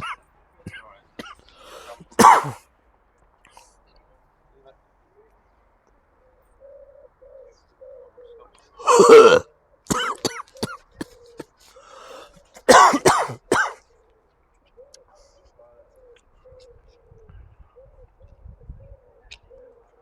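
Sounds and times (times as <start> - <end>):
man coughing and spluttering: 2.1 - 2.6, 8.8 - 11.1, 12.6 - 13.8.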